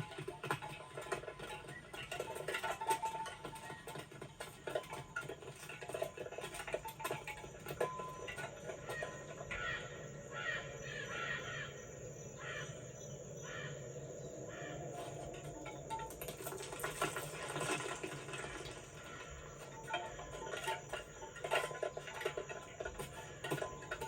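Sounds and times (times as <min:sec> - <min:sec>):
harsh caw-like calls: 0:09.0 - 0:15.3.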